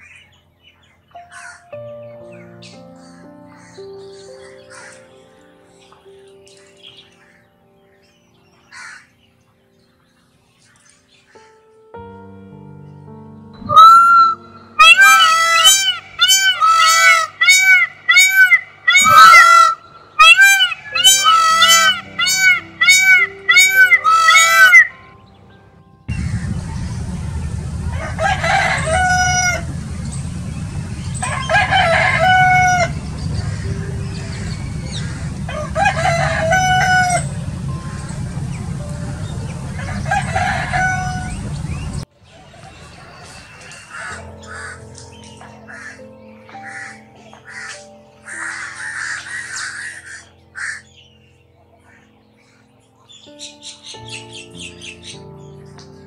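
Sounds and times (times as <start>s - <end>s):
large bird honking: 1.2s - 1.7s, 2.3s - 5.2s, 13.6s - 44.9s, 45.5s - 51.1s
rooster crowing: 13.7s - 24.9s, 27.4s - 44.7s
steady low rumble: 25.6s - 42.1s.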